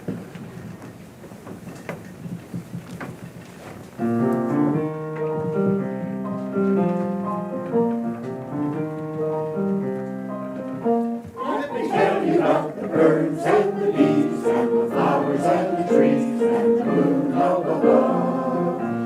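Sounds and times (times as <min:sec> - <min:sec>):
piano chords: 0:03.9 - 0:19.0.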